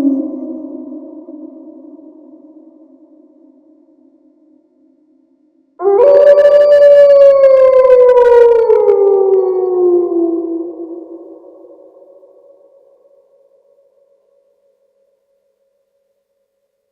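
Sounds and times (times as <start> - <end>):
wolf howl: 5.8 - 12.3.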